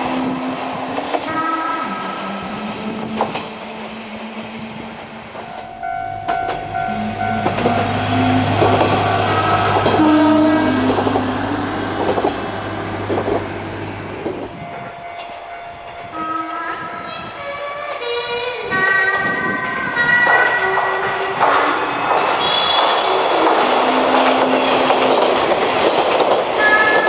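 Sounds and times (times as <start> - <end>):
train horn: 0.0 - 13.2, 22.4 - 25.7, 26.6 - 27.0
wheels clacking on rail joints: 0.0 - 16.1, 19.0 - 27.0
diesel railcar engine rumble: 0.0 - 27.0.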